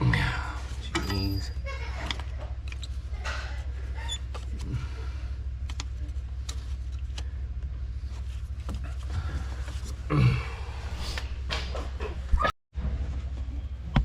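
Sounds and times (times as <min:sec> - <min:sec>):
grunt-like sound: 0:00.0 - 0:00.6, 0:10.1 - 0:10.8
steady low hum: 0:00.0 - 0:14.0.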